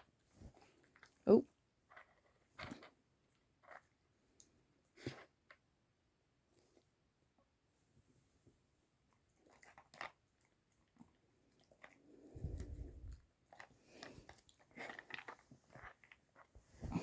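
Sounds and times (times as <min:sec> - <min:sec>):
dog chewing treats: 0:13.5 - 0:16.2.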